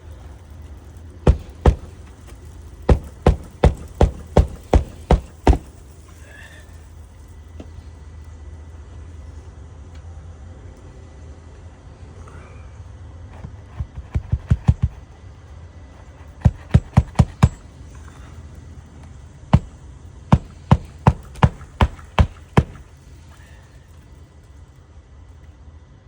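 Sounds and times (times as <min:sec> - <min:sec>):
hammer nailing roof shingle: 0:01.2 - 0:06.1, 0:13.4 - 0:15.2, 0:16.0 - 0:18.3, 0:19.5 - 0:23.5.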